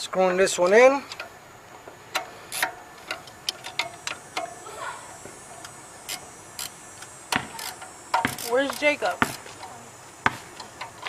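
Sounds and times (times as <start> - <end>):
ratchet wrench clicking: 2.1 - 4.6, 5.6 - 9.7.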